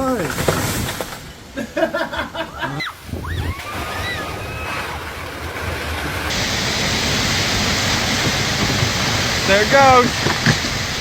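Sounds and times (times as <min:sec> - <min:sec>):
storm wind rushing through trees: 0:00.0 - 0:11.0
wind buffeting microphone: 0:03.0 - 0:11.0.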